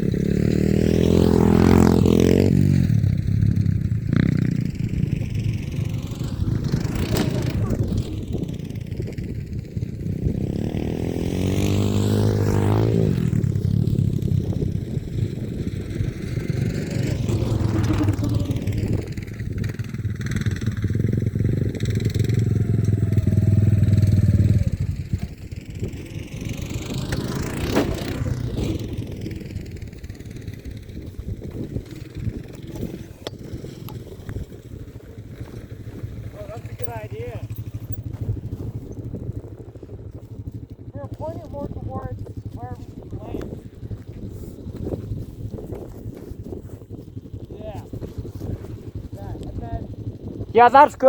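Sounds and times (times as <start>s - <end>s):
off-road vehicle engine revving: 0.0s - 9.4s, 10.0s - 38.4s.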